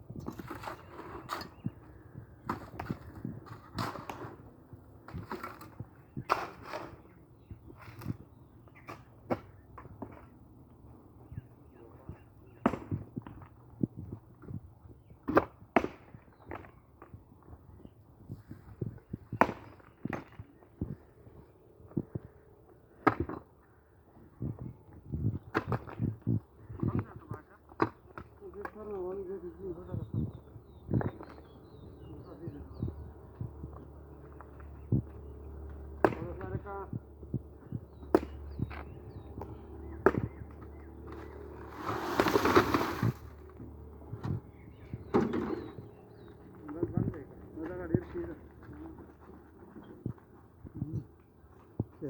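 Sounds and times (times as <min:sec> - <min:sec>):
scraping rushing noise: 0:41.5 - 0:43.3.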